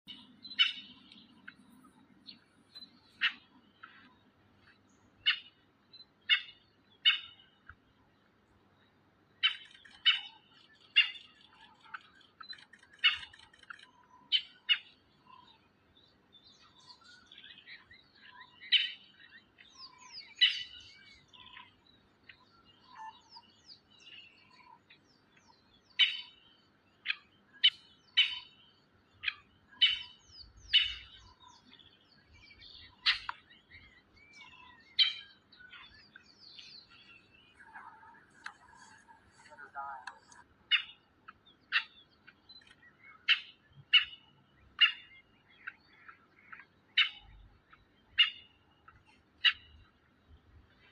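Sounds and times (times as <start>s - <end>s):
soft bird twittering: 0.0s - 50.9s
bird sharp chirps: 0.1s - 4.3s, 5.2s - 7.8s, 9.4s - 15.6s, 25.8s - 50.0s.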